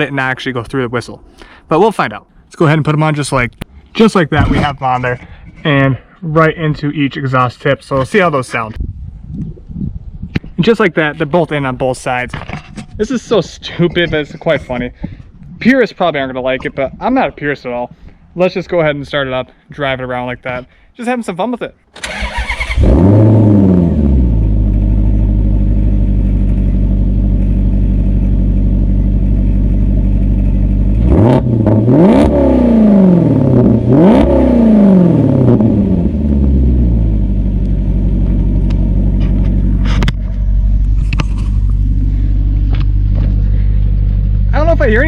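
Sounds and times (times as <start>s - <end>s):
car engine starting and idling: 21.9s - 45.0s
engine revving: 22.0s - 45.0s.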